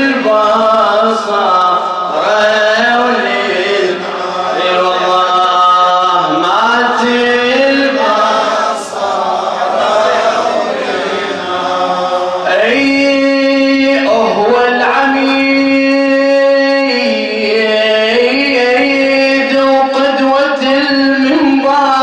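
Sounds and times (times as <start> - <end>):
man chanting an elegy: 12.4 - 22.0.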